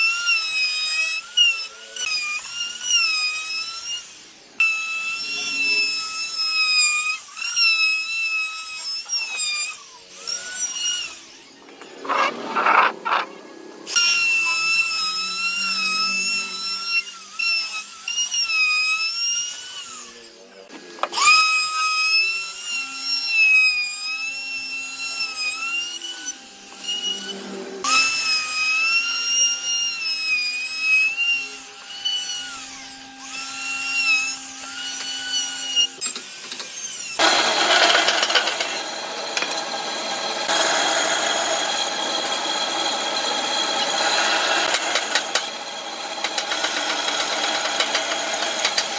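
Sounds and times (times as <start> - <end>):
electric drill whining: 0.0 - 48.9
harsher power tool running: 37.2 - 48.9.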